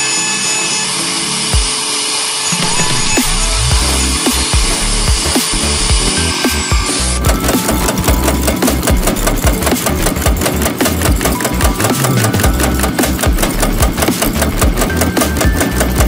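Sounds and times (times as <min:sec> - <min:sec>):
machine clicking rapidly: 0:06.9 - 0:16.0.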